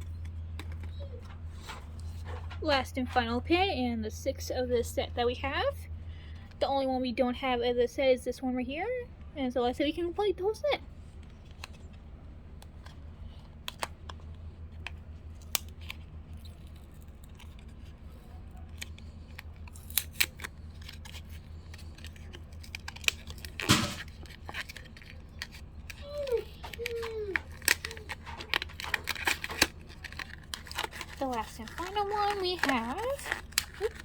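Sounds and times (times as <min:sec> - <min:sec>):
steady low hum: 0:00.0 - 0:34.0
loud crinkling tear: 0:12.6 - 0:34.0
cardboard box clicks and rustles: 0:14.7 - 0:34.0.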